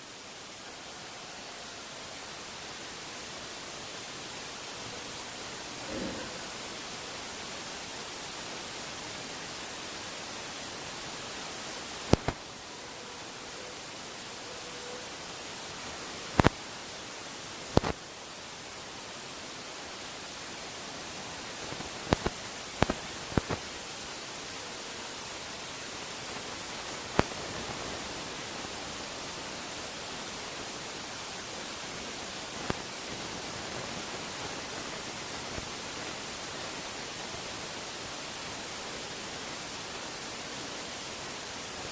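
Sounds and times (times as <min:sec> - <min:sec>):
steady hiss: 0:00.0 - 0:41.9
sharp clicks: 0:12.1 - 0:12.4.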